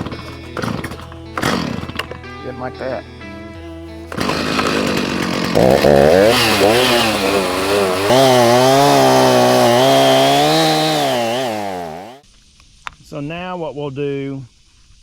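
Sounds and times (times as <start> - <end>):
chainsaw engine revving: 0.0 - 2.1, 4.1 - 12.2.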